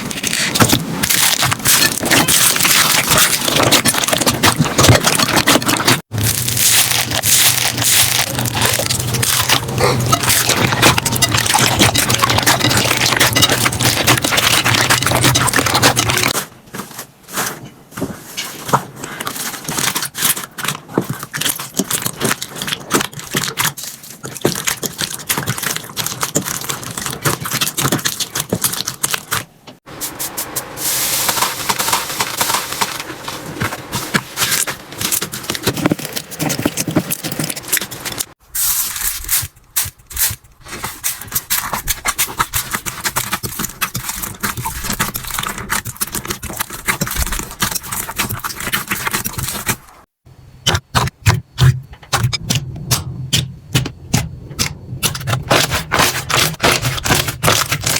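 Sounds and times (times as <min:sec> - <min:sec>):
slime squished with crackling: 0:00.0 - 0:16.4, 0:18.6 - 0:29.6, 0:53.8 - 0:57.9.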